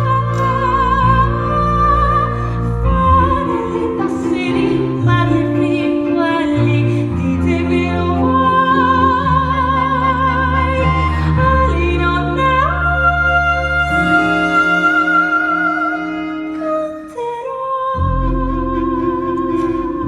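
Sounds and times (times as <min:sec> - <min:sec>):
orchestra playing: 0:00.0 - 0:20.0.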